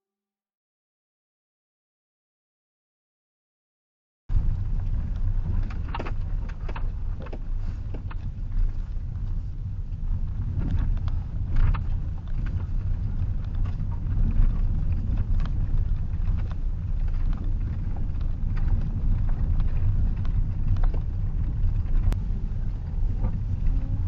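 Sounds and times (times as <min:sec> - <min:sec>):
van engine rumble: 0:04.3 - 0:24.0
road noise: 0:14.6 - 0:24.0.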